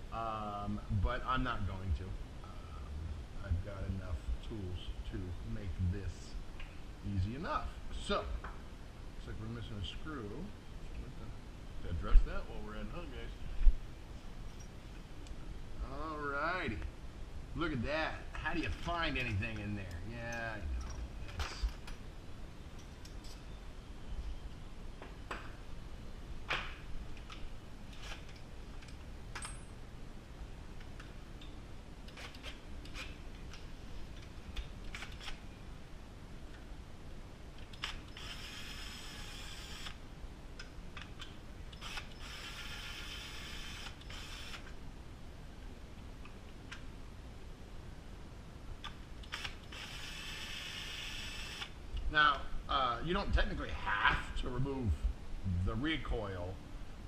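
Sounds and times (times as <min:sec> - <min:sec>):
tools and parts clicking: 0:27.2 - 0:29.8
power screwdriver whirring: 0:37.8 - 0:40.0, 0:41.8 - 0:44.7, 0:49.2 - 0:51.8.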